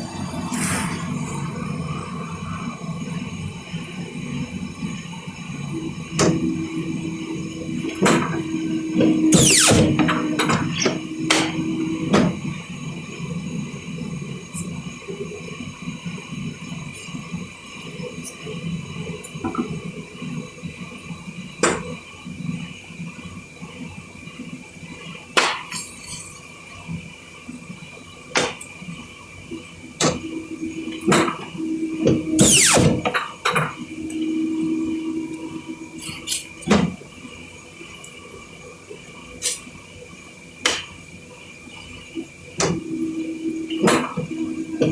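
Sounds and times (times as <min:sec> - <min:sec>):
low steady hum: 0:00.0 - 0:17.0, 0:30.0 - 0:39.2.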